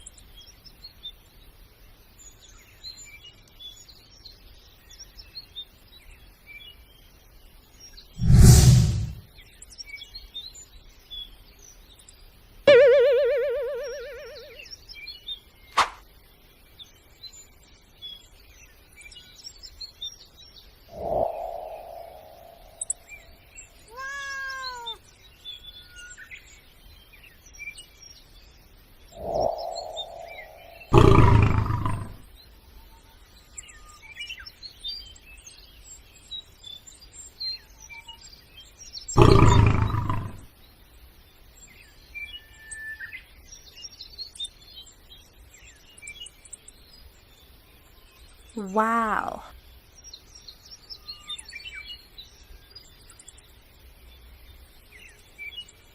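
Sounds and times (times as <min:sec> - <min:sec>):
faint birdsong: 0:00.0 - 0:55.9
loud sound effect bursts: 0:08.2 - 0:09.2
brief warbling tone: 0:12.7 - 0:14.6, 0:29.2 - 0:30.9
short falling tone: 0:12.7 - 0:14.6
sharp click: 0:15.8 - 0:16.0.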